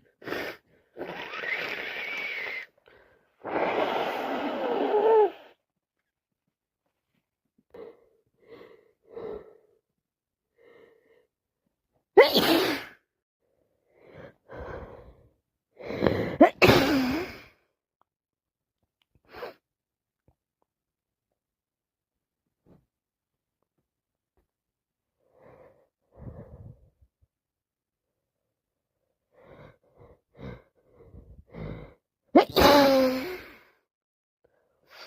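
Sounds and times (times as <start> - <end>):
person sneezing: 12.2 - 13.0, 16.3 - 17.4, 32.4 - 33.6.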